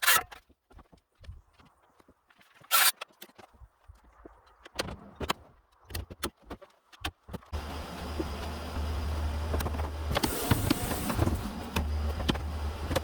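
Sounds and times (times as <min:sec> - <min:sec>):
motor humming: 0:07.6 - 0:13.0.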